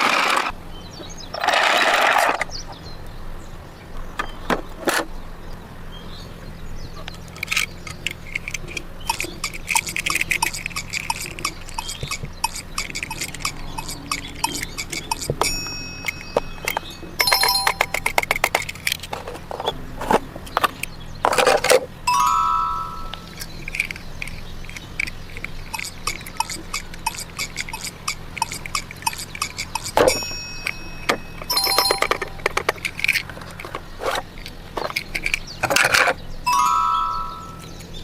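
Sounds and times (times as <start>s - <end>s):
plastic toys clicking and rattling: 7.0s - 38.0s
bell-like electronic ring: 15.4s - 18.1s, 22.1s - 23.4s, 30.1s - 32.5s, 36.5s - 37.8s
faint short beeps: 36.5s - 37.7s.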